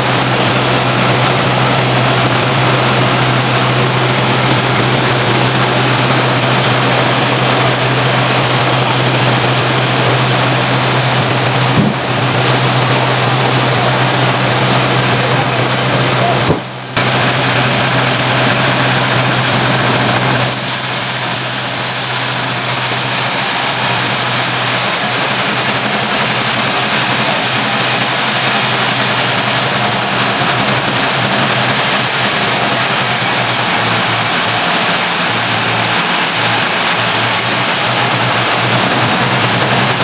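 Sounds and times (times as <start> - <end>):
sawmill machinery drone: 0.0 - 40.0
hiss: 20.3 - 40.0.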